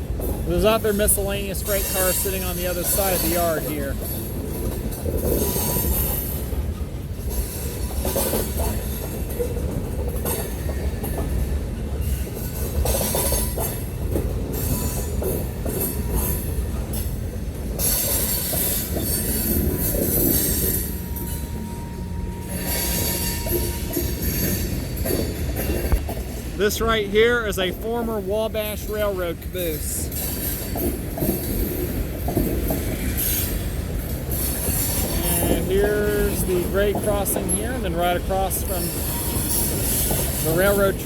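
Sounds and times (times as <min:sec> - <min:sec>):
train wheels rumbling on rail: 0:00.0 - 0:41.0
freight car knocks and clacks: 0:34.4 - 0:39.0.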